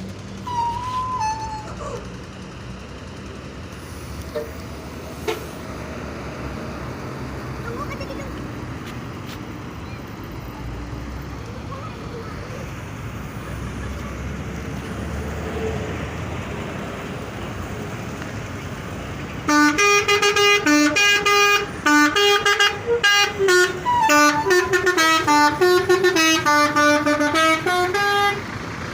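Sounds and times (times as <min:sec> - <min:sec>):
traffic noise: 0:00.0 - 0:28.9
voices: 0:00.4 - 0:03.6, 0:07.1 - 0:28.4
musical air horn tooting a tune: 0:00.5 - 0:01.8, 0:19.5 - 0:28.4.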